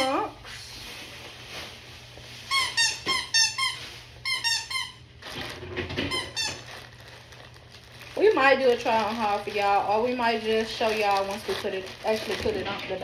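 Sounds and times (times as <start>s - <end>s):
squeaky dog toy squeaking: 2.5s - 5.0s.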